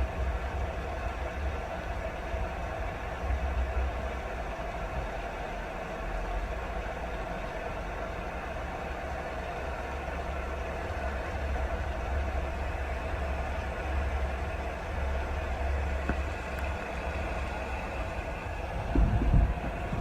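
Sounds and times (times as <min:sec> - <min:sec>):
steady rain: 0:00.0 - 0:20.0
low rumble: 0:10.4 - 0:20.0.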